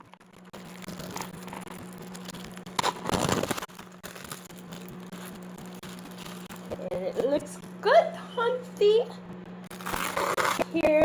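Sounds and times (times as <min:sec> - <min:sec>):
steady low hum: 0:00.0 - 0:11.0
plastic film crackling and rustling: 0:00.2 - 0:07.6, 0:09.7 - 0:10.7.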